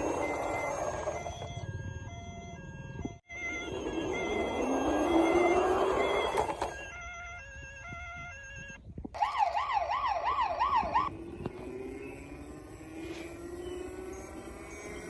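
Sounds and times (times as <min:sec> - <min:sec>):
electronic beeps tune: 0:00.0 - 0:07.0
toy police siren warbling: 0:00.0 - 0:15.0.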